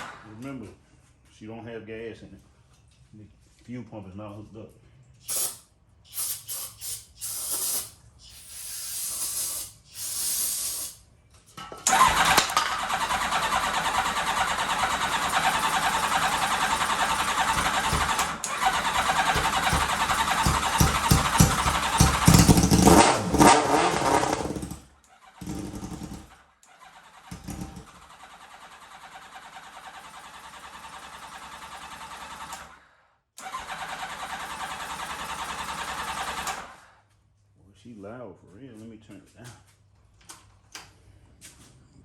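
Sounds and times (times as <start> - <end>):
motorcycle engine starting and running: 11.8 - 37.2.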